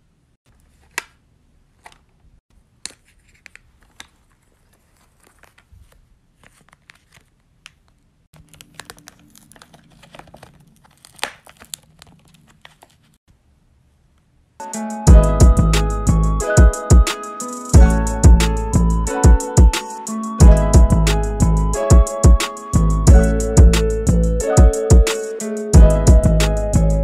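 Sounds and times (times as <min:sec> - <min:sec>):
plastic packaging crinkling: 0:03.6 - 0:13.2.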